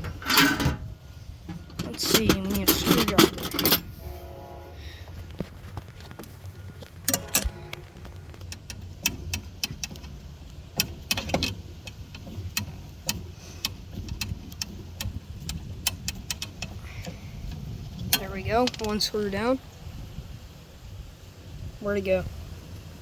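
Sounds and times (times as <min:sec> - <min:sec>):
steady low rumble: 0:00.0 - 0:23.0
metal hand tools clinking: 0:01.7 - 0:03.9.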